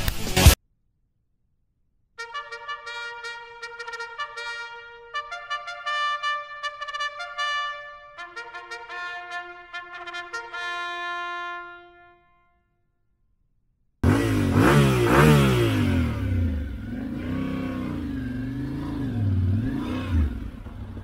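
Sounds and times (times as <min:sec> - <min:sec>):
trumpet music: 0:02.2 - 0:12.8
motorcycle engine revving: 0:14.0 - 0:21.0.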